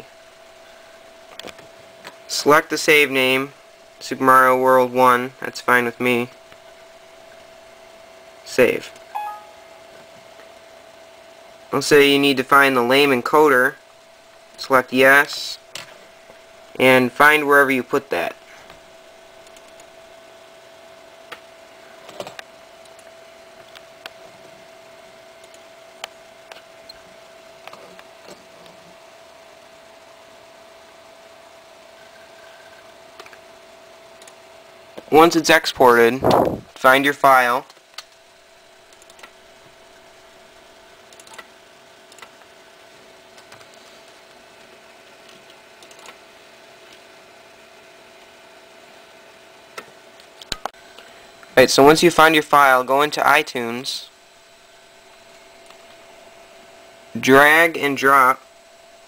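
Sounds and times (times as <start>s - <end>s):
faint constant tone: 0.0s - 36.1s
steady hum: 0.0s - 59.0s
computer mouse clicks: 38.9s - 39.3s, 41.1s - 41.5s, 45.2s - 46.2s.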